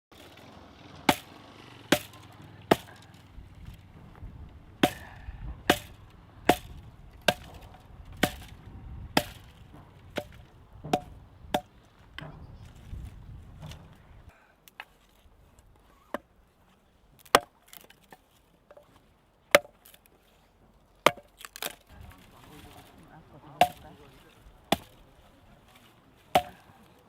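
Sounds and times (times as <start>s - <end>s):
sharp chopping blows: 1.1s - 3.8s, 4.8s - 11.8s, 26.3s - 26.7s.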